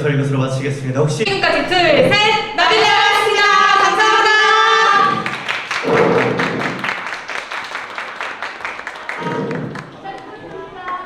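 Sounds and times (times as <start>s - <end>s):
group of voices calling out: 1.3s - 6.8s
audience clapping: 1.3s - 11.0s.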